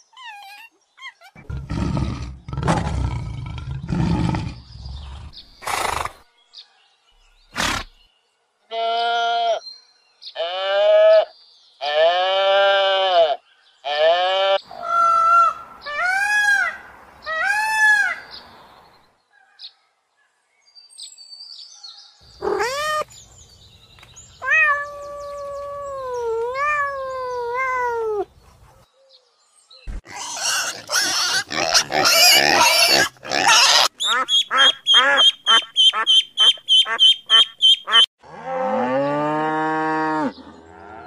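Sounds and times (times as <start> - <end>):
animal calls: 22.3 - 23.1.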